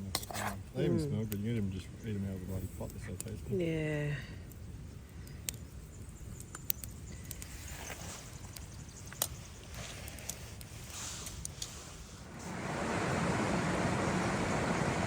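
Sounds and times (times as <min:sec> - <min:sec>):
low background rumble: 0:11.8 - 0:15.0.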